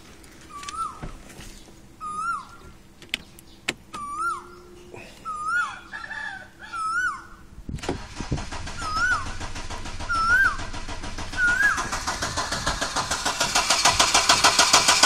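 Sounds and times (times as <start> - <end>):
animal call rising and dropping: 11.3 - 14.5.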